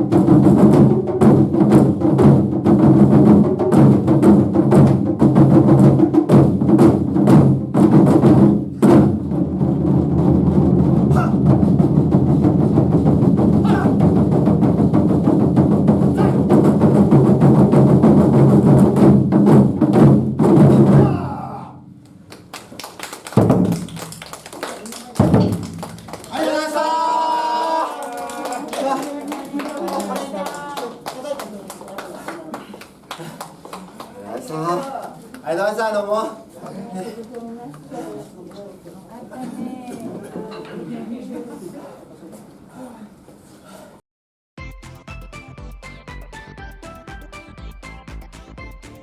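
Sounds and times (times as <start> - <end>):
taiko drums playing loudly: 0.0 - 22.0, 23.4 - 24.2, 25.1 - 26.4.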